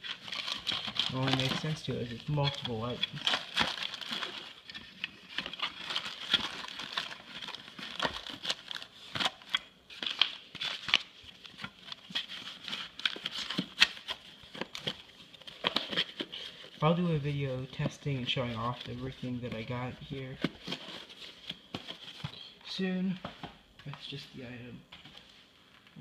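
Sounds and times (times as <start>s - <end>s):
packaging crinkling and rustling: 0.0s - 24.3s.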